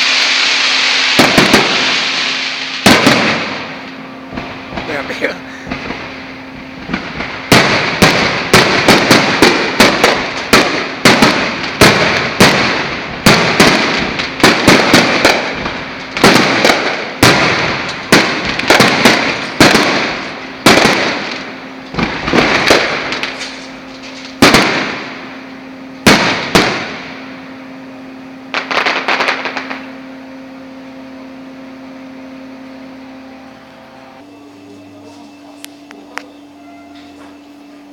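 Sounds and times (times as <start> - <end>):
fireworks crackling: 0.0 - 25.4, 26.0 - 27.3, 28.5 - 29.9
fireworks banging: 0.0 - 27.4, 28.5 - 30.0.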